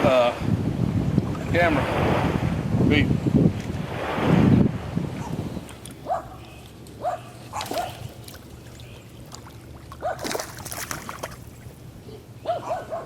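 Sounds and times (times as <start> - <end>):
splashing: 7.3 - 11.9.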